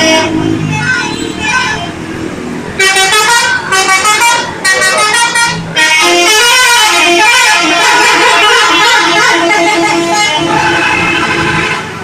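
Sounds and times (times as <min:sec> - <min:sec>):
multi-tone air horn tune: 0:02.8 - 0:11.9.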